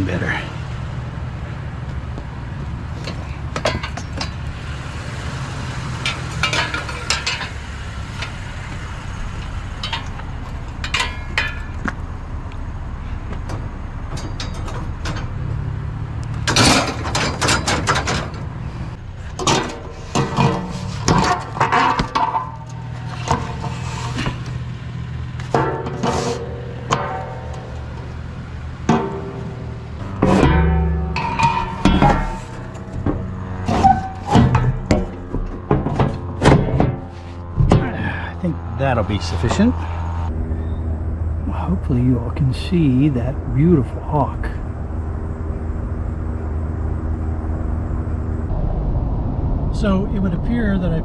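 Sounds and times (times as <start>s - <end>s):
vehicle engine running: 0.0s - 51.0s
scrap metal clinking and clanking: 2.8s - 5.0s, 5.8s - 12.0s, 13.4s - 15.7s, 16.3s - 38.7s.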